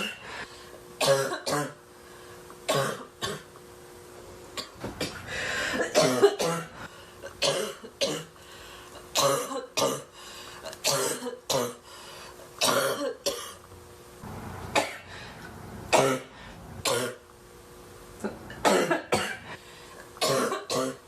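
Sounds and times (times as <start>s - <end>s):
woman coughing: 0.0s - 0.2s, 1.0s - 1.8s, 2.7s - 3.5s, 4.6s - 8.4s, 9.0s - 10.1s, 10.8s - 11.8s, 12.6s - 13.6s, 14.8s - 15.1s, 15.9s - 16.3s, 16.9s - 17.2s, 18.3s - 19.6s, 20.2s - 21.0s.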